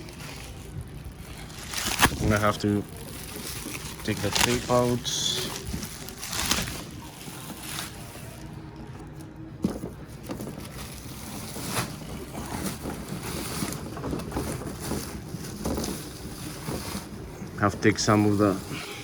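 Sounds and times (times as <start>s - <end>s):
rustling and handling noise: 0.0s - 19.0s
tape being pulled off: 0.1s - 8.5s.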